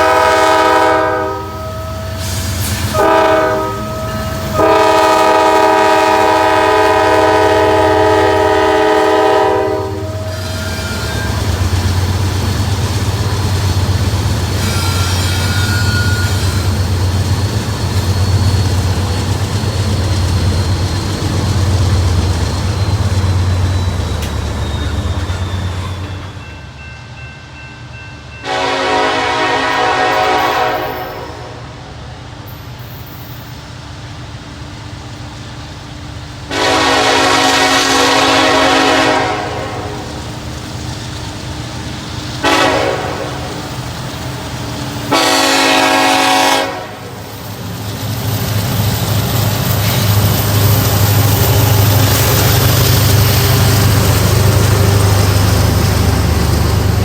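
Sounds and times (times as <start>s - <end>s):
locomotive air horn blasts: 0.0s - 11.4s, 28.4s - 31.8s, 36.5s - 40.2s, 42.4s - 43.6s, 45.1s - 47.2s
diesel locomotive rumbling: 0.0s - 57.0s.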